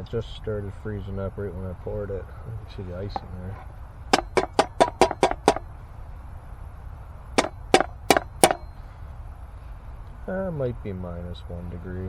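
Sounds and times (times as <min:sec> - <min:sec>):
sharp taps on hard surface: 0:04.2 - 0:05.7, 0:07.4 - 0:08.7.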